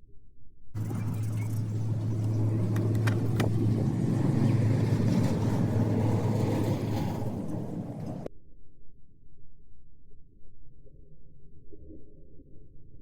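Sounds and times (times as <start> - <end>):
sharp clicks: 0.8 - 4.8
small electric motor humming: 0.8 - 8.1.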